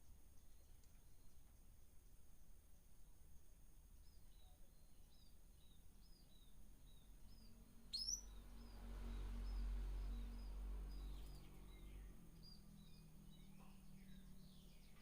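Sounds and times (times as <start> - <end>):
small birds chirping: 3.9 - 15.0
sharp bird call: 7.9 - 8.3
low rumble: 8.2 - 14.2.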